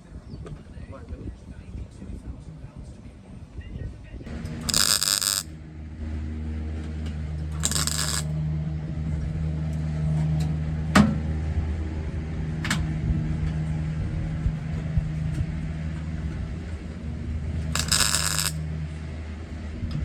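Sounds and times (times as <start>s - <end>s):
welding crackle: 4.7s - 5.5s, 7.6s - 8.3s, 17.8s - 18.6s.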